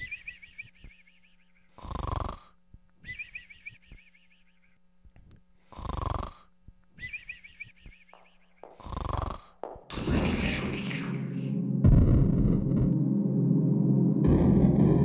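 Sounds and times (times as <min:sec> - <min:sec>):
cartoon snore: 0:01.8 - 0:02.6, 0:05.7 - 0:06.5, 0:08.8 - 0:11.5.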